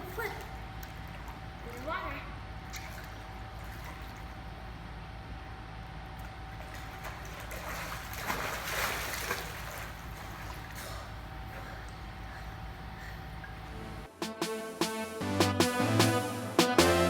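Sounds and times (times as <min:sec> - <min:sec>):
water trickling and sloshing: 0:00.0 - 0:05.1, 0:06.1 - 0:14.1
steady low hum: 0:00.0 - 0:17.0
water splashing: 0:06.6 - 0:14.0.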